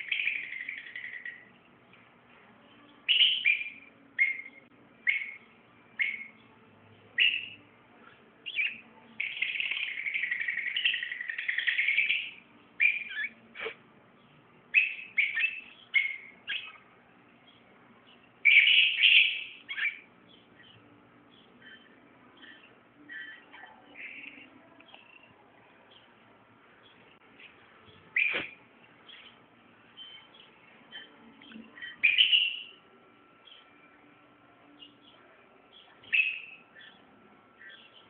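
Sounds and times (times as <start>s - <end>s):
birds chirping shrilly: 0.0s - 1.6s, 8.5s - 13.4s, 14.7s - 16.9s, 18.4s - 25.3s, 28.1s - 29.4s, 30.0s - 32.8s, 34.9s - 38.0s.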